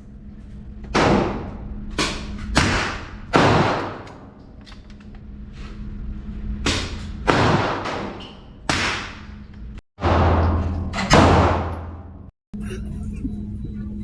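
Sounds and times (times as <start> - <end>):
echoing gunshots: 0.9 - 4.3, 6.6 - 9.2, 10.0 - 12.0.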